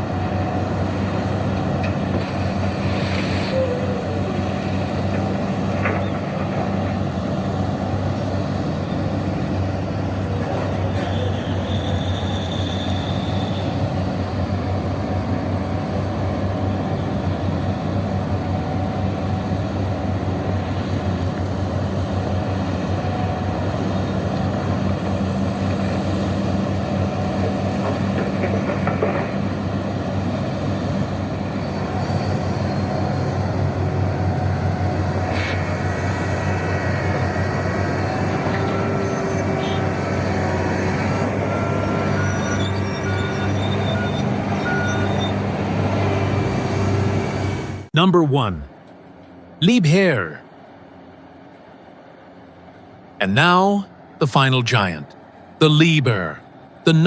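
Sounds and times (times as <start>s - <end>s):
excavator diesel engine humming: 0.0s - 11.8s.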